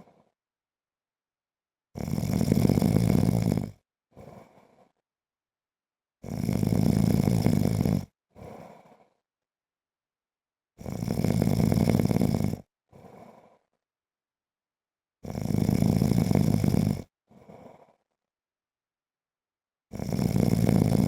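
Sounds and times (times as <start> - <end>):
quiet breath sound: 0.0 - 0.4, 2.3 - 5.0, 6.4 - 9.4, 10.8 - 13.9, 16.4 - 18.2
man snoring: 2.0 - 4.7, 6.2 - 9.0, 10.8 - 13.6, 15.2 - 18.0, 19.9 - 21.0.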